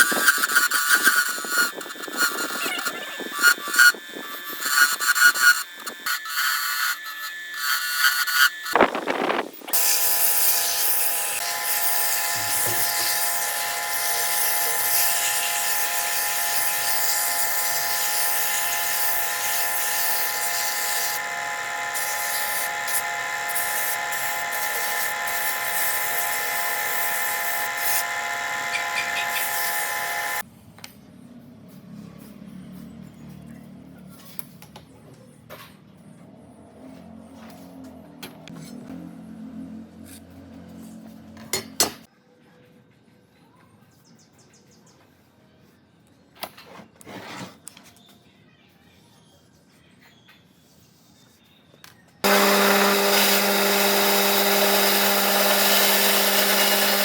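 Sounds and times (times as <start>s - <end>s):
power tool motor running: 0.0s - 30.4s, 52.2s - 57.0s.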